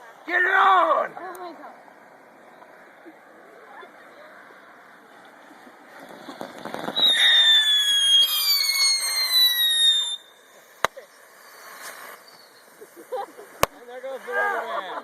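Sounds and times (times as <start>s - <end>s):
fireworks whistling: 4.4s - 15.0s
firecracker bang: 5.9s - 10.2s.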